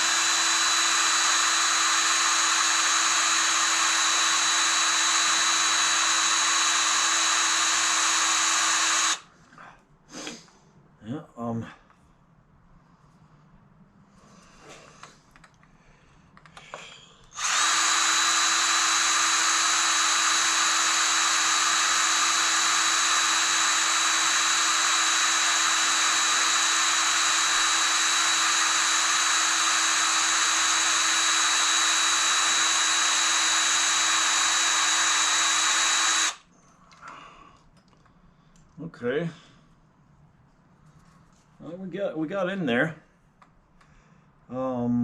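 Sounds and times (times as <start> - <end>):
electric drill drilling: 0.0 - 9.3, 17.4 - 36.5
faint handling noises: 40.4 - 41.6.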